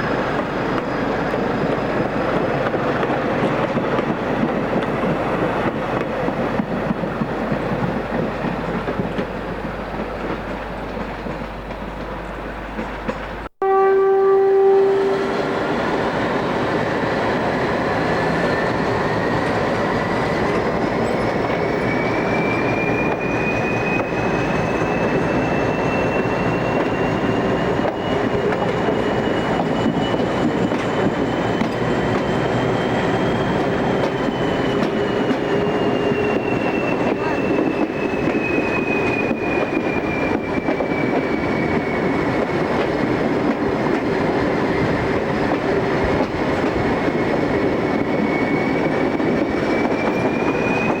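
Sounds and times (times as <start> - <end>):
train rumbling on rails: 0.0 - 51.0
train horn blast: 13.6 - 15.7
train whine rising in pitch: 13.6 - 51.0.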